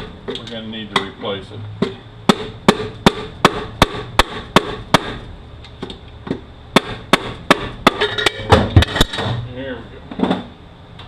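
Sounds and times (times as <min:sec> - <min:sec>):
sharp metal knocks: 0:01.8 - 0:05.2, 0:06.3 - 0:09.4.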